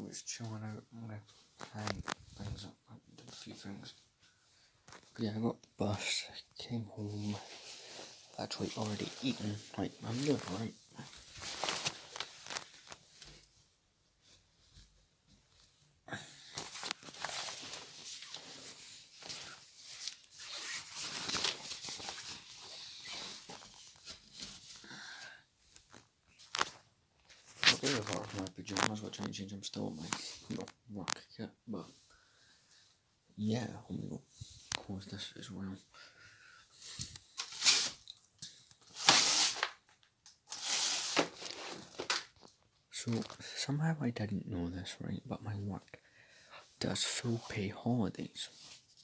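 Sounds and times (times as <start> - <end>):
rustling and crinkling: 1.2 - 6.0, 6.6 - 15.9, 16.5 - 24.9, 25.6 - 31.2, 36.8 - 43.4.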